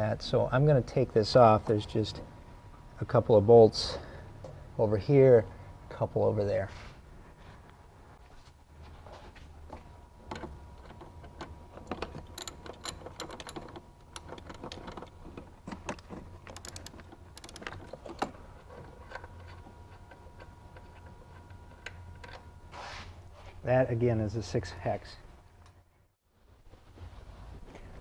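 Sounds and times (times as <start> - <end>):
socket ratchet clicking: 11.8 - 15.1, 15.8 - 18.4.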